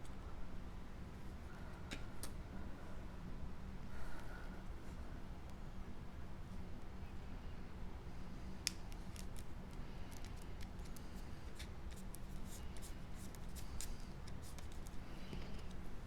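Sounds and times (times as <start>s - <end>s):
light paper clicks and snips: 8.5s - 15.9s.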